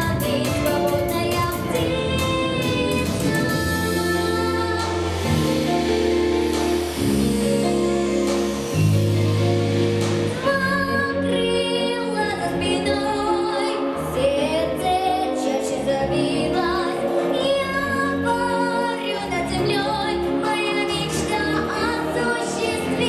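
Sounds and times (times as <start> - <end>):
woman singing with vibrato: 0.0 - 8.8, 10.3 - 23.0
instrumental accompaniment: 0.0 - 10.8.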